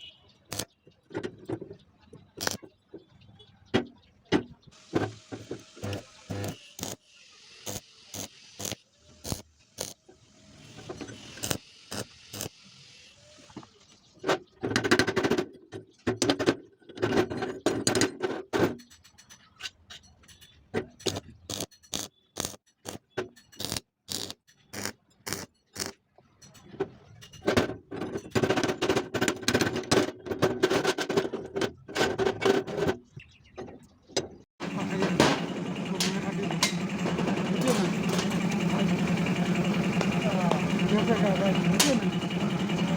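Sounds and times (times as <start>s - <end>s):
metal clicks knocks and scraping: 14.3s - 33.1s, 34.2s - 42.9s
dense metal clattering: 34.6s - 42.9s.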